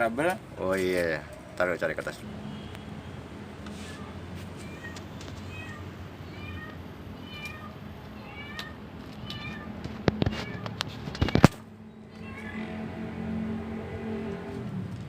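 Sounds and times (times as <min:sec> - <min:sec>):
sharp clicks and knocks: 0:08.6 - 0:12.2.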